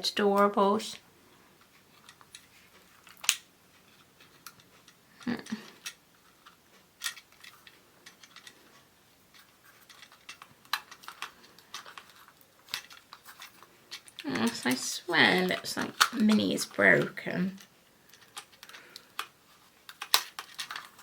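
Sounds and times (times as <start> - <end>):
plastic wrapping rustling: 1.5 - 21.0
plastic toy clicking: 2.0 - 3.5, 4.4 - 8.6, 9.3 - 16.8, 17.6 - 21.0.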